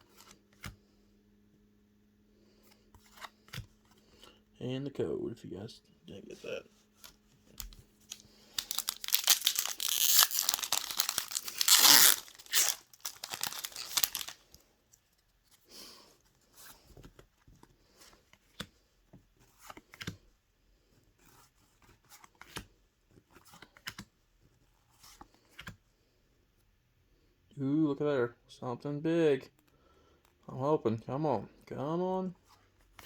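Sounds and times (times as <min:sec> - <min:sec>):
foil wrapper tearing: 0:08.1 - 0:14.5.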